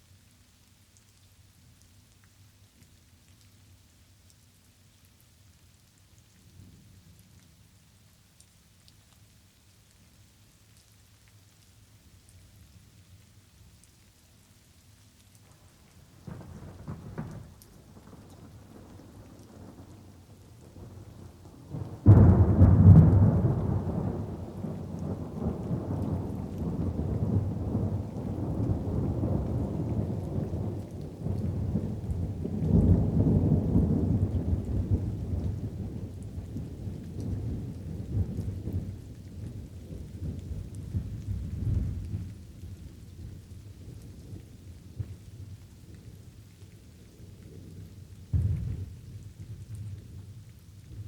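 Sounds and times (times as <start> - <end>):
light rain: 0.0 - 51.0
thunder rumbling: 16.2 - 42.4, 48.3 - 51.0.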